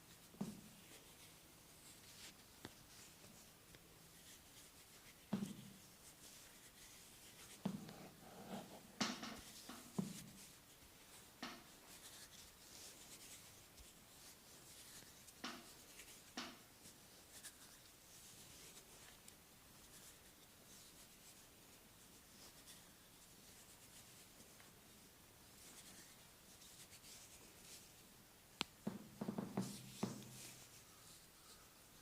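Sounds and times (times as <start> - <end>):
soft taps and pats: 0.1 - 1.2, 2.1 - 13.9, 14.7 - 16.7, 28.6 - 30.8
hands rubbing skin and hair: 0.1 - 28.0, 28.6 - 32.0.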